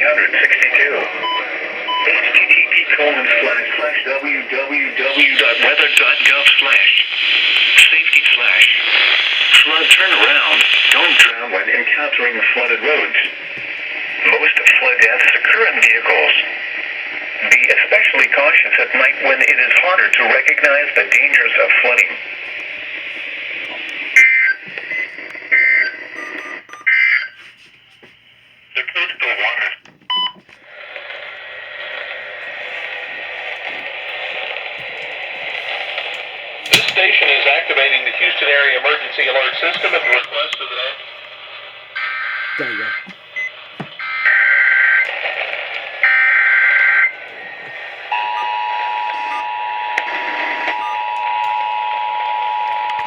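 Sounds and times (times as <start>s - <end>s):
faint radio static: 0.0s - 53.0s
harsh electronic data bursts: 42.0s - 52.8s
two-tone attention signal: 48.1s - 49.9s, 50.5s - 53.0s.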